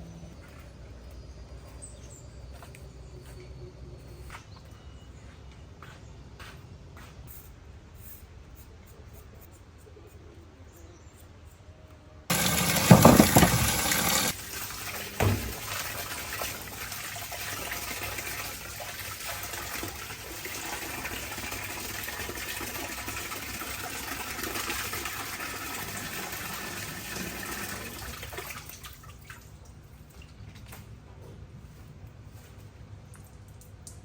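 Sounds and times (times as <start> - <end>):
knock: 12.3 - 14.3
water running: 12.3 - 29.4.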